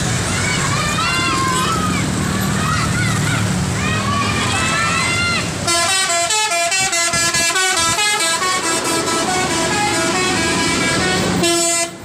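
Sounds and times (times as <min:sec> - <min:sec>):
multi-tone bus horn playing tune: 0:05.6 - 0:12.0.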